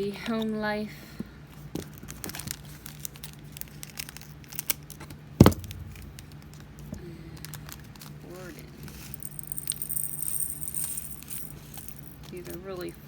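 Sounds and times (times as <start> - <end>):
sharp thump: 5.4 - 6.4.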